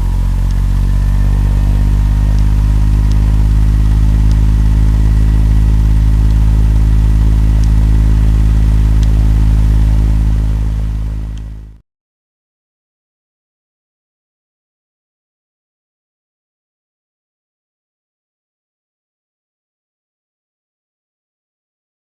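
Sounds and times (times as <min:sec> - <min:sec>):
propeller aircraft engines humming: 0:00.0 - 0:11.8.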